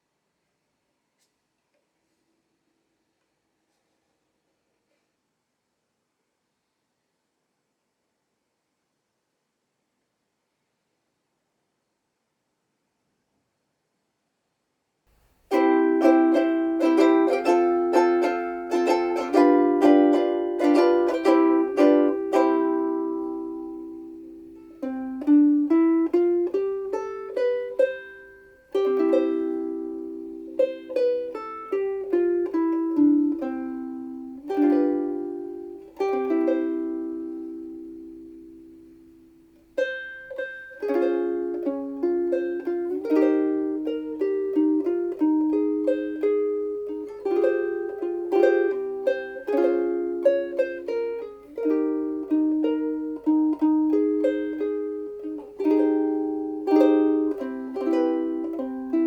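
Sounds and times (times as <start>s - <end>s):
ukulele playing: 15.5s - 59.0s.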